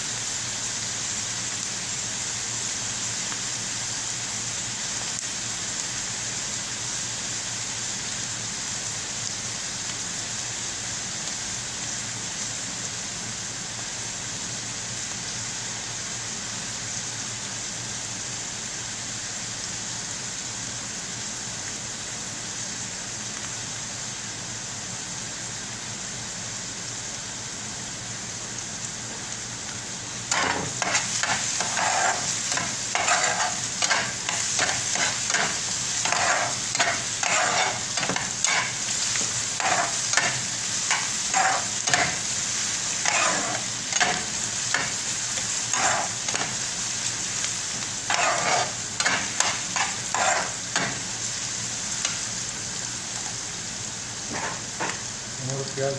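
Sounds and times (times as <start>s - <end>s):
onions sizzling in oil: 0.0s - 55.9s
spatula scraping a pan: 30.3s - 46.6s, 48.0s - 51.0s.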